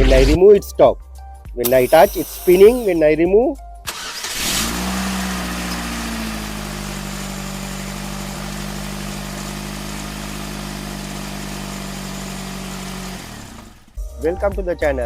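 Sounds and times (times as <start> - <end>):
starter motor electric hum: 1.6 - 3.0, 3.9 - 14.0.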